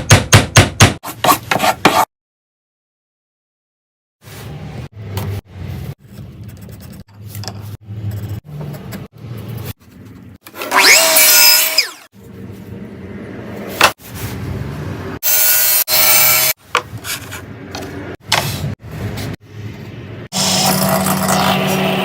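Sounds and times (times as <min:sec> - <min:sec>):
power tool cutting wood: 0:10.5 - 0:12.1, 0:15.2 - 0:16.6, 0:20.3 - 0:22.0.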